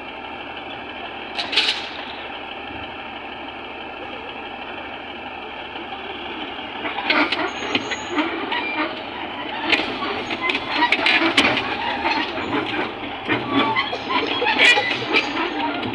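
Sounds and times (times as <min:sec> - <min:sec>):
heavy diesel machinery running: 0:00.0 - 0:15.9
high squeaks: 0:06.9 - 0:15.9
sharp metal clanks and knocks: 0:09.7 - 0:15.9.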